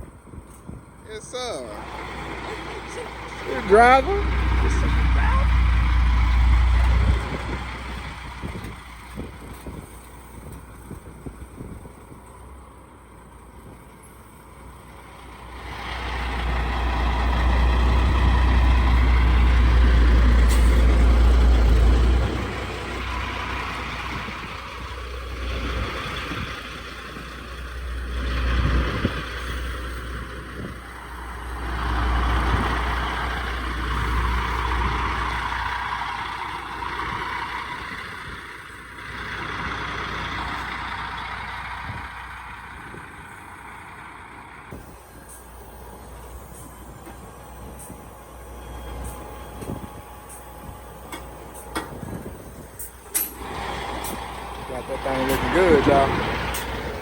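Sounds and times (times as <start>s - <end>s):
diesel truck engine rumbling: 0.0s - 57.0s.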